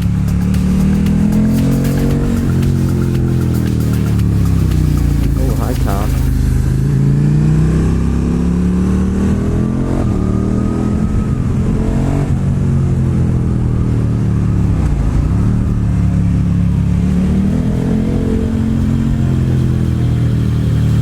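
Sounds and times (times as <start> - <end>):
motorcycle engine revving: 0.0 - 21.0.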